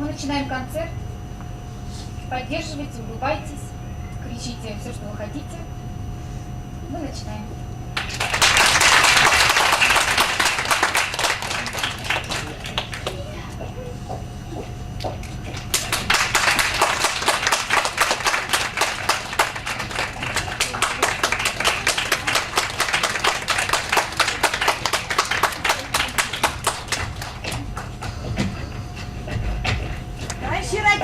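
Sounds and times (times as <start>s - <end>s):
audience applauding: 8.0s - 13.4s, 15.0s - 28.2s.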